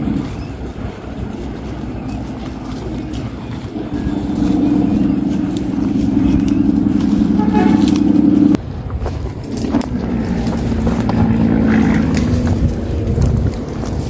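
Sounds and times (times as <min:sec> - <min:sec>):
vehicle engine rumbling: 0:00.0 - 0:14.0.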